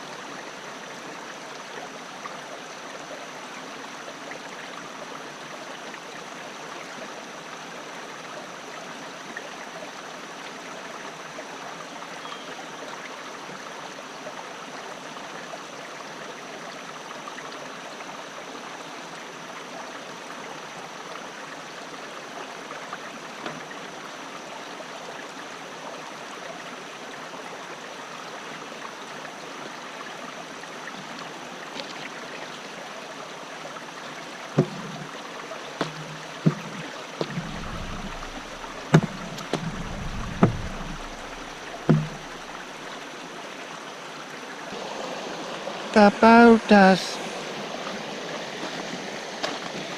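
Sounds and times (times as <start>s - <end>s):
water rushing over rocks: 30.4s - 49.9s.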